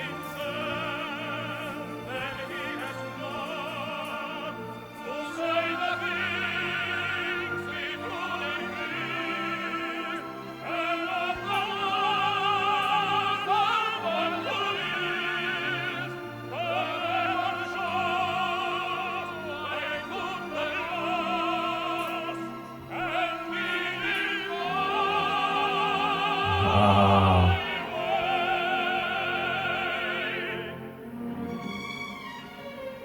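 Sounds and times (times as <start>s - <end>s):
operatic tenor voices singing: 0.1s - 30.8s.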